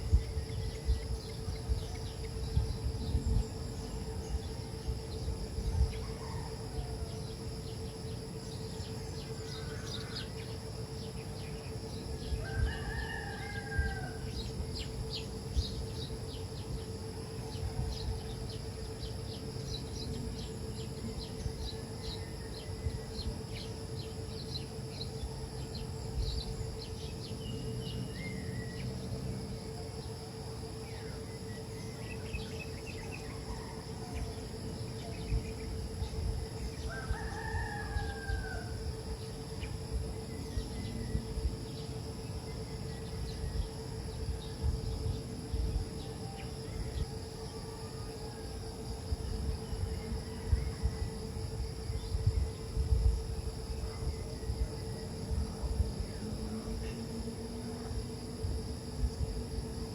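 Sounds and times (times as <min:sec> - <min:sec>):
insects droning: 0:00.0 - 0:59.9
steady low hum: 0:00.0 - 0:59.9
rooster crowing: 0:05.9 - 0:07.4, 0:12.2 - 0:14.6, 0:33.1 - 0:34.6, 0:36.7 - 0:39.1.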